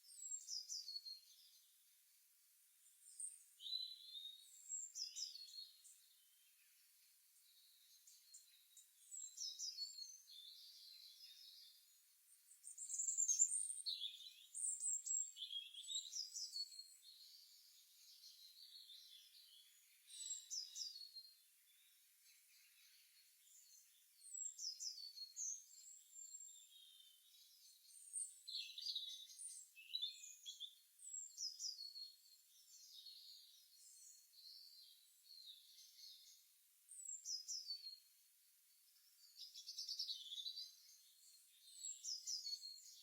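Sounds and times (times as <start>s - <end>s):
songbirds chirping: 0.0s - 43.0s.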